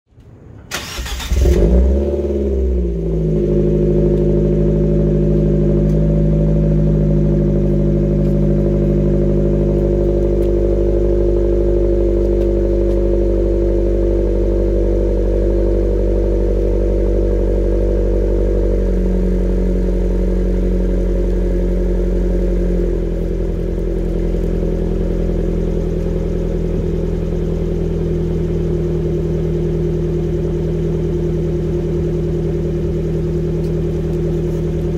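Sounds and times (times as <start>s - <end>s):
car engine starting and idling: 0.1s - 34.9s
engine cranking: 0.6s - 1.8s.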